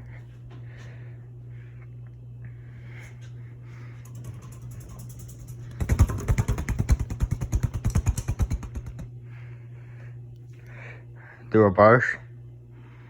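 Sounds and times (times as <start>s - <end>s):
ceiling fan motor humming: 0.0s - 13.0s
loud rapid rattling: 4.1s - 9.1s.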